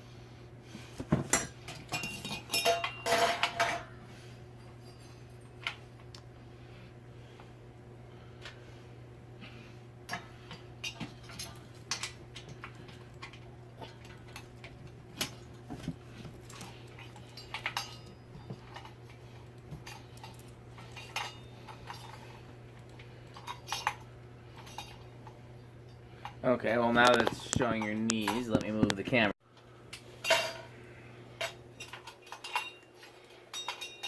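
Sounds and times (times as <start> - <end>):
steady low hum: 0.0 - 34.0
metal parts clicking and clinking: 1.2 - 3.9, 10.8 - 19.0, 19.6 - 22.3, 23.3 - 25.1, 31.4 - 34.0.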